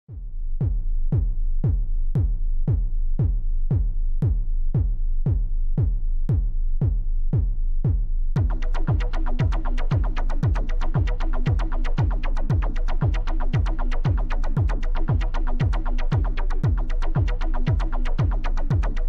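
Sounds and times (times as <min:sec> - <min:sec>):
drum-machine kick drum: 0:00.1 - 0:19.0
electronic dance music: 0:08.4 - 0:19.0.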